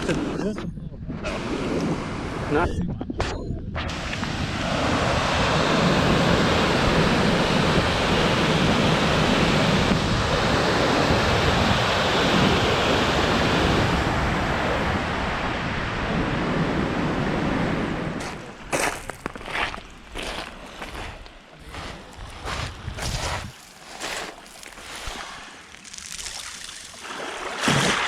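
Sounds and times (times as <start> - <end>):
wind on the microphone: 0.0 - 18.7, 20.2 - 23.6.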